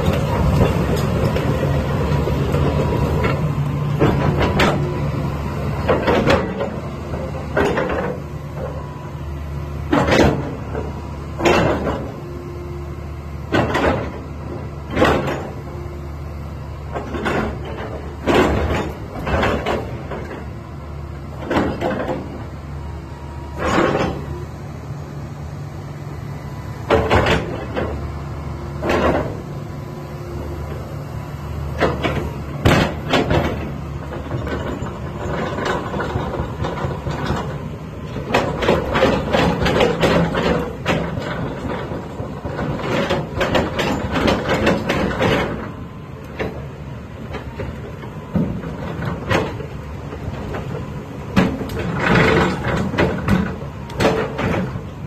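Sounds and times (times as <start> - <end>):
excavator diesel engine running: 0.0 - 55.0
loud clunks: 9.9 - 12.2, 13.5 - 15.7, 16.9 - 20.5, 26.8 - 28.0, 28.8 - 29.5, 31.7 - 45.8, 51.3 - 55.0.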